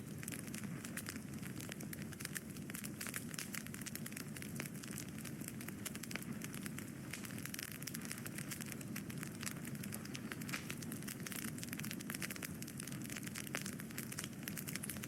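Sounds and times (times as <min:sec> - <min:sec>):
wood fire crackling and popping: 0:00.0 - 0:15.0
low rush of flame: 0:00.1 - 0:15.0.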